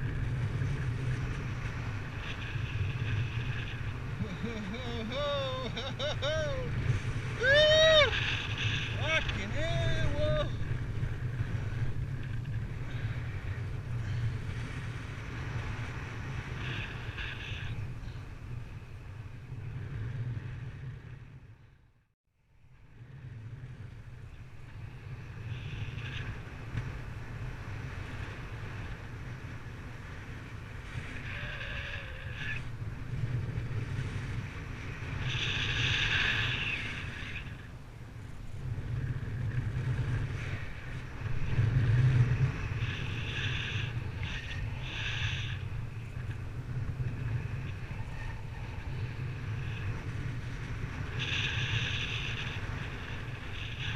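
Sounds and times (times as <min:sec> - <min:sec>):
wind buffeting microphone: 0:00.0 - 0:21.8, 0:22.7 - 0:53.9.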